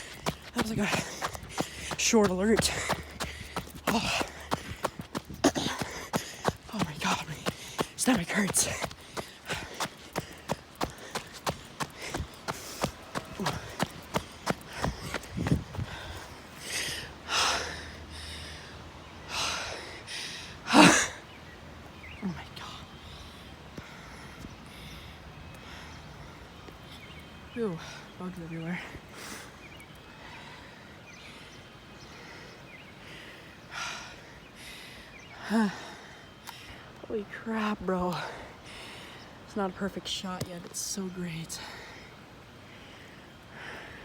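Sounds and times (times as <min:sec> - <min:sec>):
quick jogging footsteps: 0:00.0 - 0:17.4.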